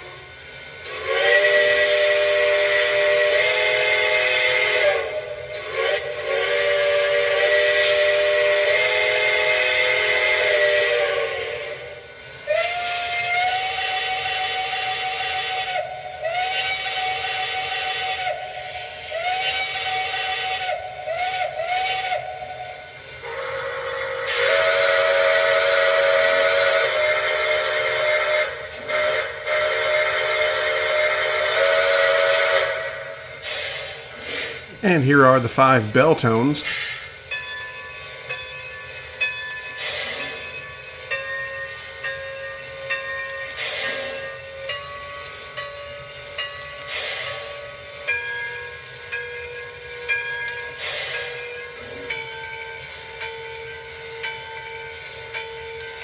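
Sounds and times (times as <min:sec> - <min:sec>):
steam whistle blasts: 0:00.0 - 0:34.8.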